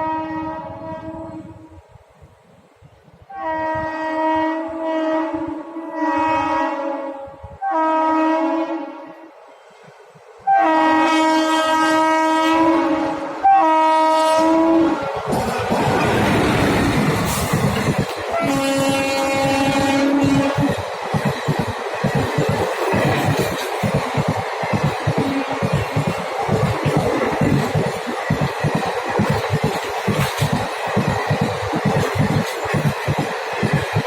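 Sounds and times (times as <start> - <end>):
locomotive horn blasts: 0.0 - 1.7, 3.3 - 9.3, 10.4 - 15.1, 18.3 - 20.8
train rushing past: 0.0 - 34.0.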